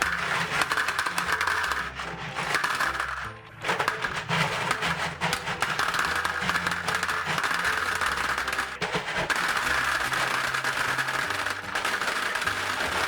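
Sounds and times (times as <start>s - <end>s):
gumballs clattering: 0.0s - 13.0s.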